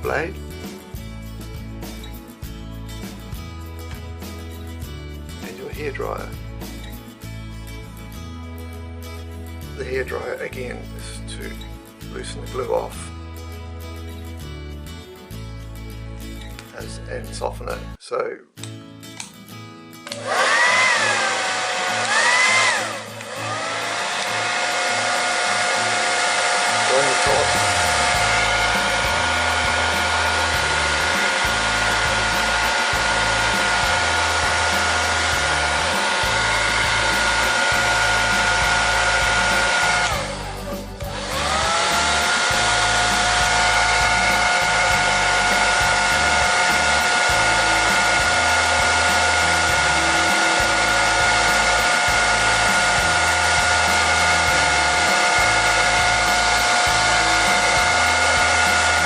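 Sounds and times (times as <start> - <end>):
hairdryer blowing with motor whine: 20.1 - 59.0.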